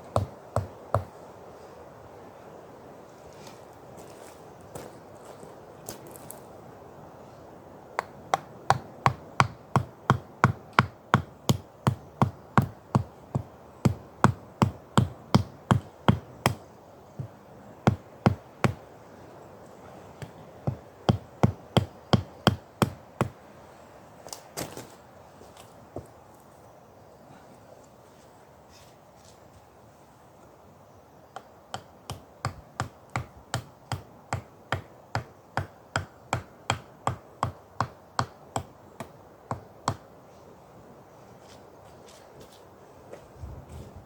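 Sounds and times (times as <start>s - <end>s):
hand tool striking wood: 8.0s - 16.6s.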